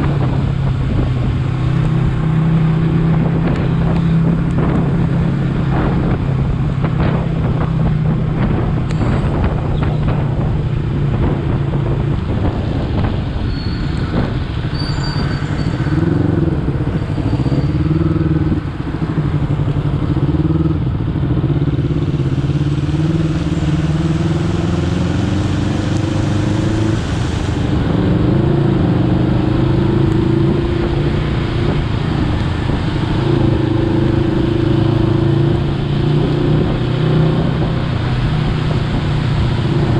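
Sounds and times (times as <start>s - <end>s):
motorcycle engine revving: 0.0s - 39.9s
wind and road noise: 0.0s - 39.9s.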